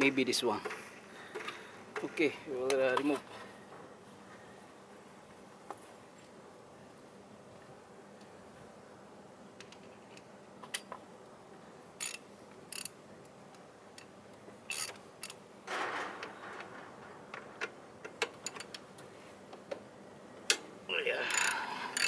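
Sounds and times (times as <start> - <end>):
spanner clicking on bolt: 12.0 - 13.0, 14.7 - 15.8, 21.3 - 22.0.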